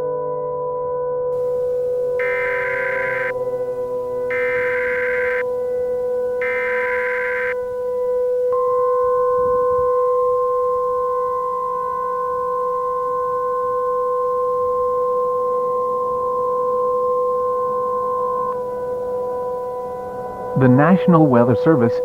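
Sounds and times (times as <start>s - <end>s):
lower steady tone: 1.4s - 22.0s
electronic alert tone: 2.2s - 3.3s.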